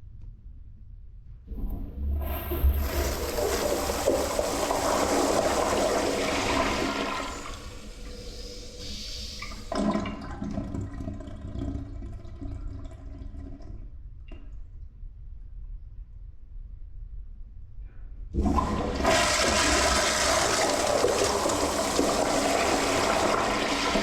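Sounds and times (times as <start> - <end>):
toilet flushing: 1.5 - 14.0, 18.4 - 24.0.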